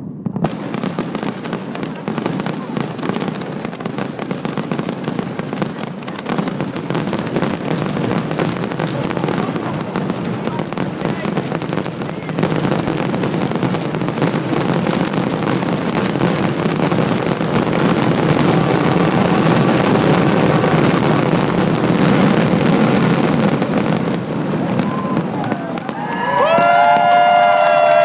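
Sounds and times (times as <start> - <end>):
fireworks bursting and crackling: 0.0 - 28.0
crowd cheering: 24.6 - 28.0.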